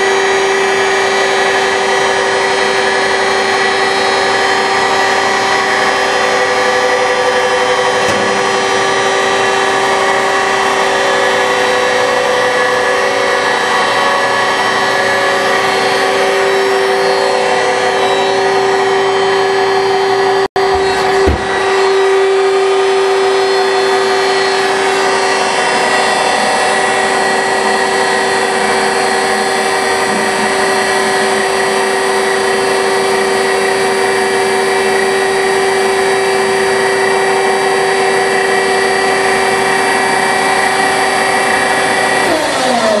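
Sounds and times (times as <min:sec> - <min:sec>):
hydraulic baler motor whining: 0:00.0 - 0:43.0
low thump: 0:21.2 - 0:21.6.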